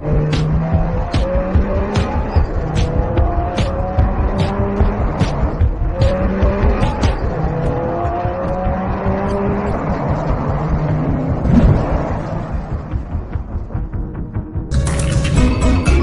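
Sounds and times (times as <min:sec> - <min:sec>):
race car engine sound effects: 0:00.0 - 0:16.0.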